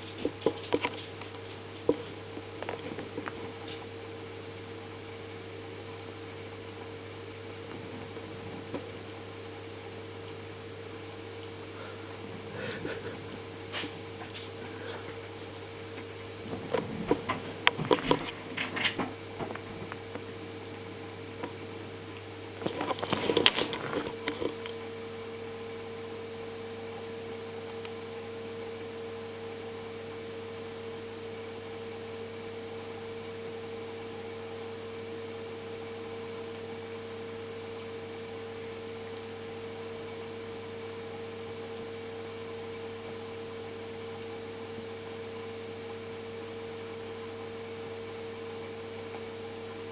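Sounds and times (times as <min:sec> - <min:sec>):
electrical hum: 0:00.0 - 0:49.9
scratchy clicking and rustling: 0:22.6 - 0:24.6.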